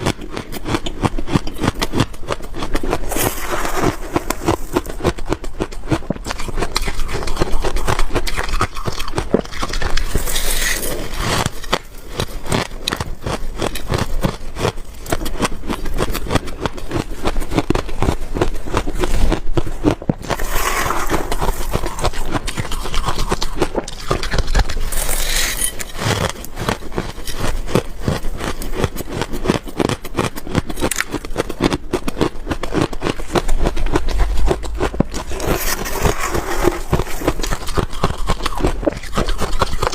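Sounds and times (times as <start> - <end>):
crunching and chewing frost: 0.0 - 39.9.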